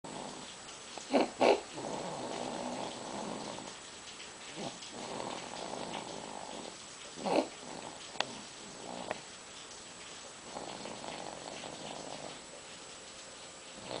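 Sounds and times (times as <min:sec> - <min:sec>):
snorting breaths: 0:00.1 - 0:03.8, 0:04.5 - 0:09.3, 0:10.4 - 0:12.5
baby snoring: 0:04.6 - 0:09.2.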